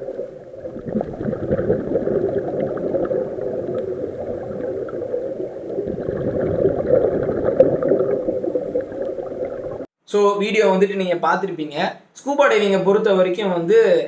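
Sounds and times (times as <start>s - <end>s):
underwater gurgling and bubbling: 0.0s - 9.9s.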